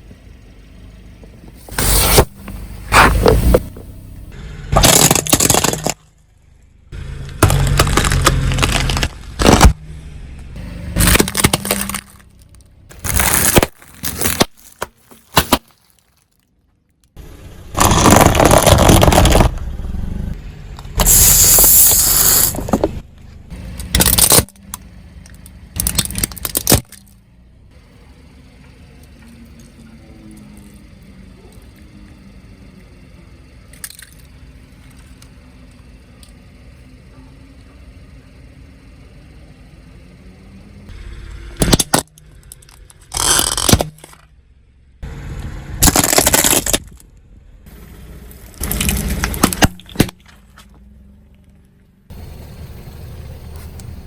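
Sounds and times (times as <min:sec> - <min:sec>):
objects crushed under vehicle: 0:04.7 - 0:06.3, 0:07.3 - 0:09.8, 0:11.0 - 0:16.9, 0:17.7 - 0:19.7, 0:25.8 - 0:27.2, 0:41.6 - 0:44.4, 0:45.8 - 0:47.1, 0:48.6 - 0:50.9.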